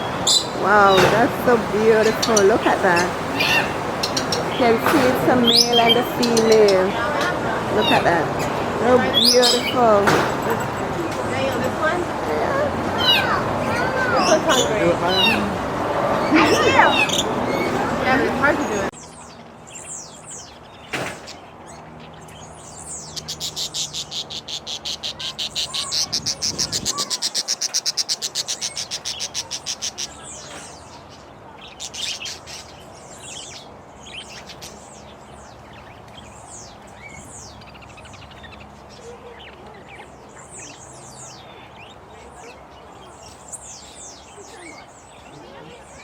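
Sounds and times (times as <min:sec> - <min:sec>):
high bird chirps: 0:00.0 - 0:11.8, 0:18.9 - 0:45.3
birds chattering: 0:00.0 - 0:46.0.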